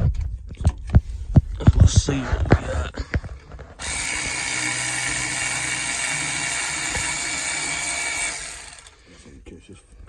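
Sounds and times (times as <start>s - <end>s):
power tool high whine: 3.8s - 9.0s.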